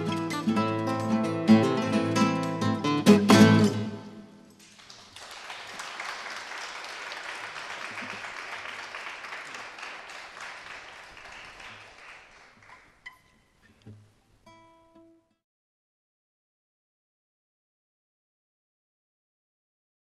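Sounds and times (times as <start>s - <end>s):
audience applauding: 4.5s - 13.4s.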